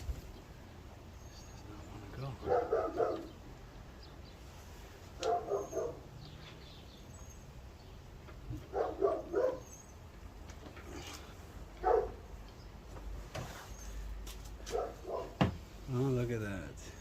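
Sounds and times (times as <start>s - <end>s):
dog barking: 2.4s - 3.4s, 5.2s - 6.1s, 8.6s - 9.7s, 11.8s - 12.2s, 14.7s - 15.4s.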